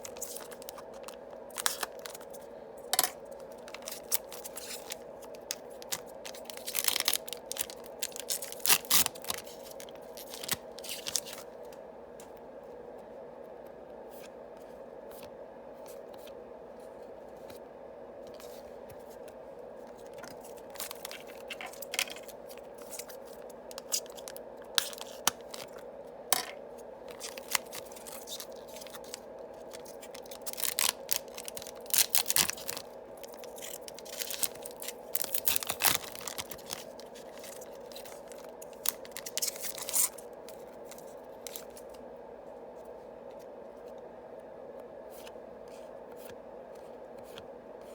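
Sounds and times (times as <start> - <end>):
card packs being torn open: 0.0 - 2.4, 3.0 - 11.4, 20.1 - 25.8, 27.1 - 41.8
steady low hum: 0.0 - 47.9.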